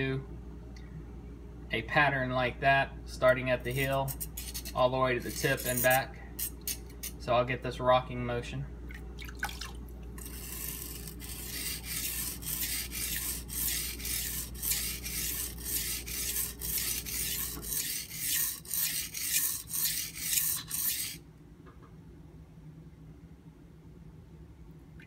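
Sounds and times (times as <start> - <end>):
knife scraping on whetstone: 3.6 - 7.2, 10.2 - 21.2.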